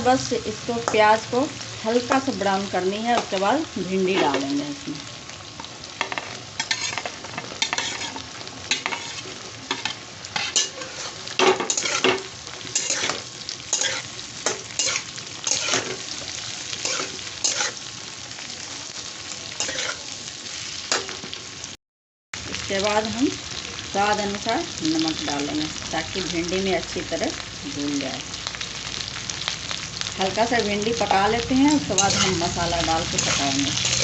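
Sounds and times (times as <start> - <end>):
onions sizzling in oil: 0.0 - 21.8, 22.4 - 34.0
spatula scraping a pan: 6.0 - 17.8, 19.6 - 20.1, 31.7 - 34.0.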